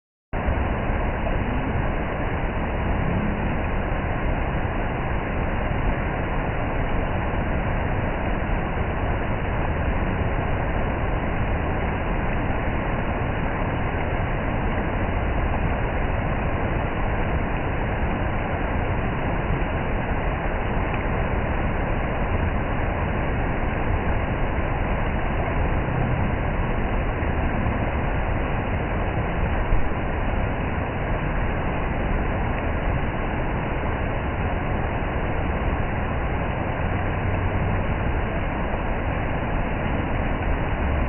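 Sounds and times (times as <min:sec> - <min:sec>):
waterfall rushing: 0:00.4 - 0:41.0.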